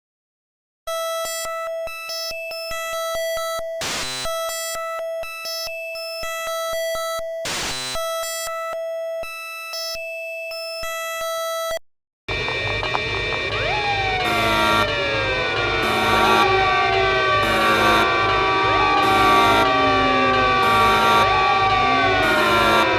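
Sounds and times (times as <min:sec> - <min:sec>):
regular clicking beat: 0:12.3 - 0:14.0
gliding electronic tones: 0:12.3 - 0:22.9
steady buzzing tone: 0:12.3 - 0:22.9
shifting high beeps: 0:12.5 - 0:22.9.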